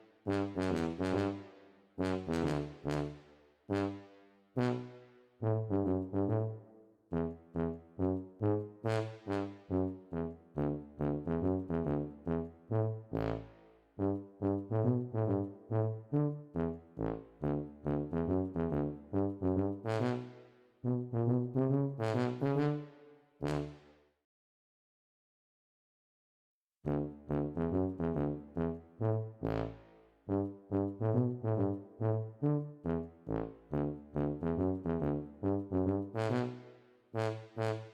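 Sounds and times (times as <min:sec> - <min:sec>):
bouncy brass-like instrumental music: 0:00.0 - 0:24.0, 0:26.8 - 0:37.9.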